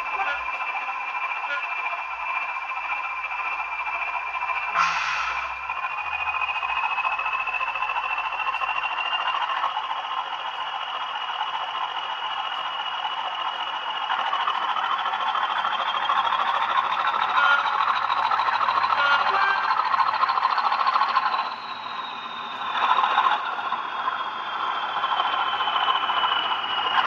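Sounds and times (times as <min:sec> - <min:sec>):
model locomotive engine sound: 0:00.0 - 0:27.0
model train running noise: 0:00.0 - 0:27.0
high whistle climbing in pitch: 0:01.4 - 0:09.3, 0:21.2 - 0:27.0.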